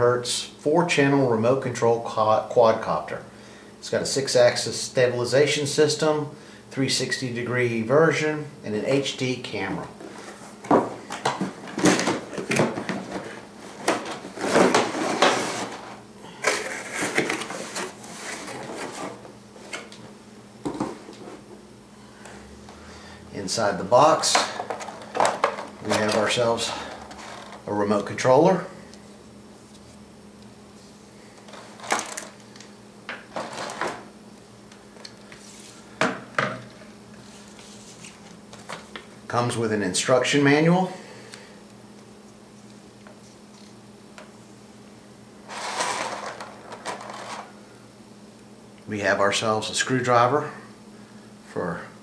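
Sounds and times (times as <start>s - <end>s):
cardboard box scraping and rustling: 13.0s - 16.0s.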